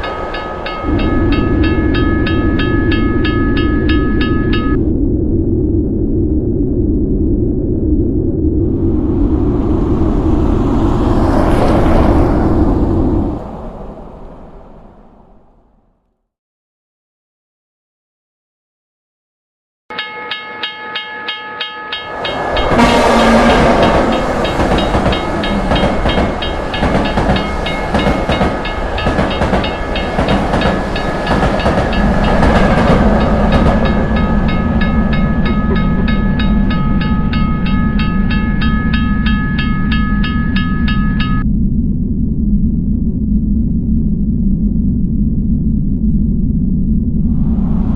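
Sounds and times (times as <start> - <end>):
railroad crossing bell ringing: 0.0 - 4.8, 19.9 - 41.4
train rumble and wheel clatter: 0.0 - 4.8, 8.7 - 15.6, 20.3 - 41.4.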